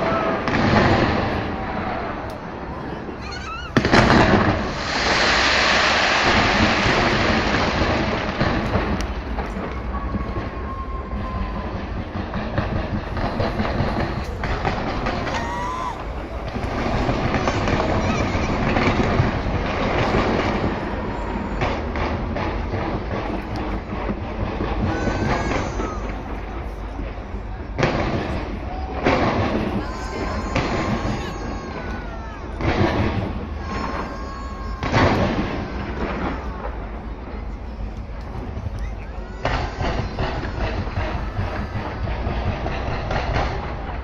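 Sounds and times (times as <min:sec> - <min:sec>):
fireworks bangs and crackling: 0:00.0 - 0:44.0
firework whistle: 0:03.2 - 0:09.0, 0:09.6 - 0:26.4.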